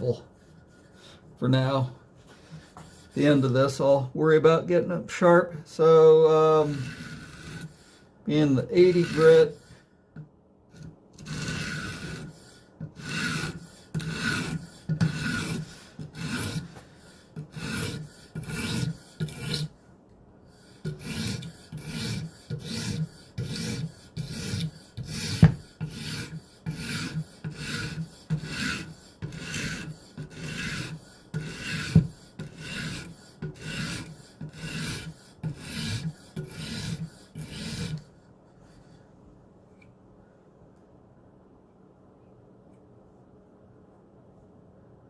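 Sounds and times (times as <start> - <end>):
knife scraping on sharpening stone: 6.6 - 7.7, 10.7 - 12.3, 17.4 - 19.7, 20.8 - 38.1.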